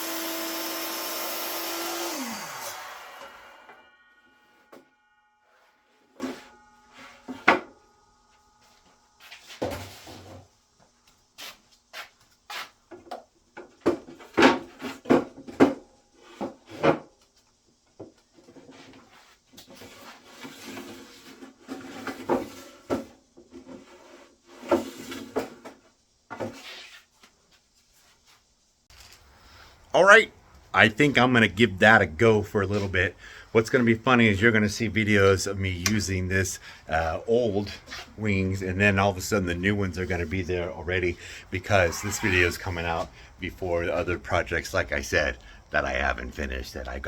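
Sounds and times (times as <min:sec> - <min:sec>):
rubbing and scraping: 0:11.4 - 0:12.8, 0:18.4 - 0:29.3, 0:37.0 - 0:44.2.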